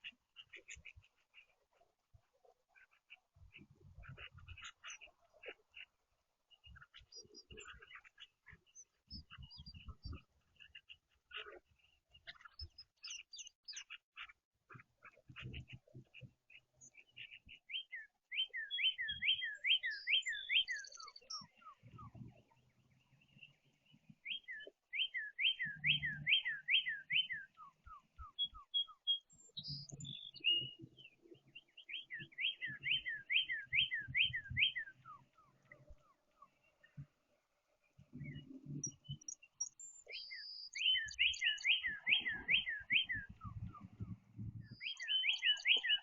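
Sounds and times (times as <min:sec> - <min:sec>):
songbird singing whistled phrases: 0:17.7 - 0:22.2, 0:24.2 - 0:35.6, 0:38.2 - 0:46.0
soft low thumps: 0:43.2 - 0:44.8.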